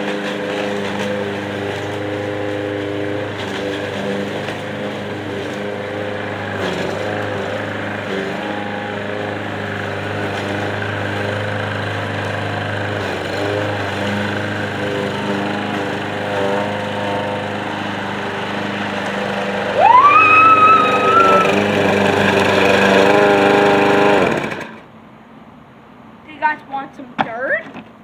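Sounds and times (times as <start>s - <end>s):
lawn mower engine running: 0.0s - 26.2s.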